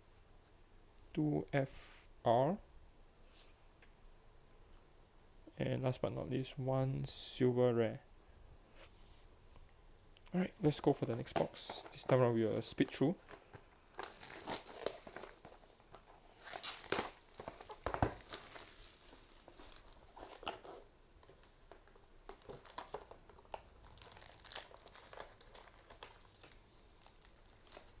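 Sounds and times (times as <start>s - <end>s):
plastic wrapping crinkling and tearing: 10.7s - 28.0s.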